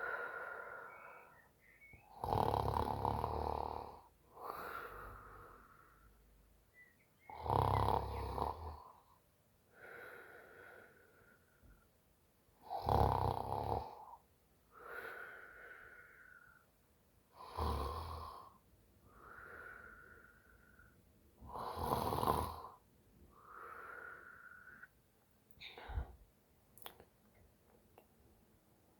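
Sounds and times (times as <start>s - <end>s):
soft whistling breath: 0.0s - 2.2s, 5.8s - 7.3s
woman snoring: 2.1s - 5.6s, 7.3s - 9.0s, 12.6s - 14.2s, 17.4s - 18.6s, 19.2s - 22.8s.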